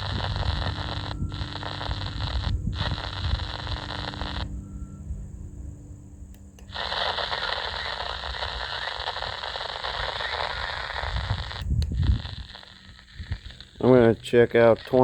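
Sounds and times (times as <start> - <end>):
radio static hiss: 0.0 - 5.1, 6.4 - 15.0
radio clicks: 6.4 - 15.0.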